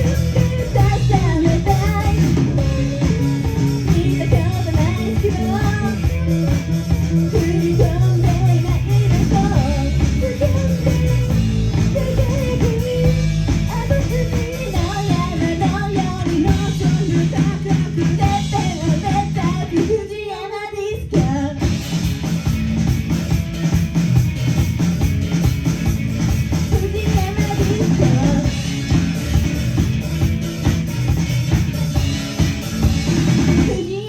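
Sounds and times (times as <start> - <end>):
bass guitar: 0.0 - 20.1, 21.0 - 34.0
person singing: 0.0 - 21.7, 26.7 - 28.6
drums: 0.0 - 34.0
electric guitar: 0.0 - 34.0.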